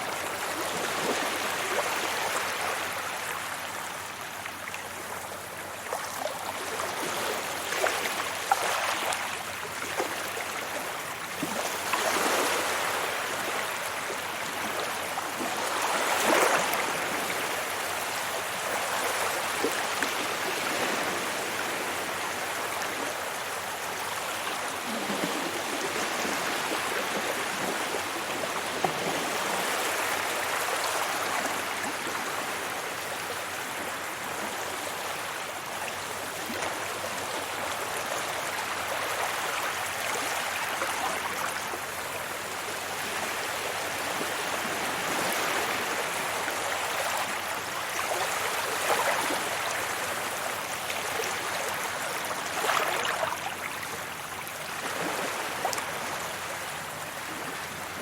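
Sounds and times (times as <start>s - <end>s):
sea waves washing onto beach: 0.0s - 58.0s
water splashes: 48.0s - 56.4s.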